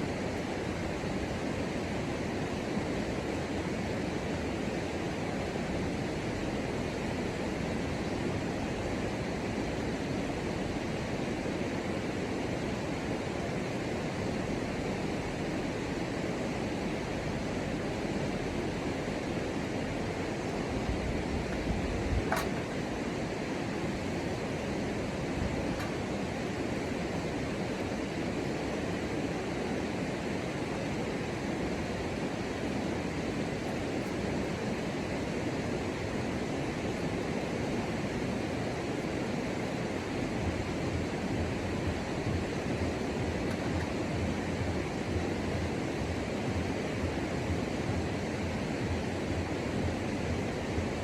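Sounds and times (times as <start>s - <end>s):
jungle ambience rushing noise: 0.0s - 51.0s.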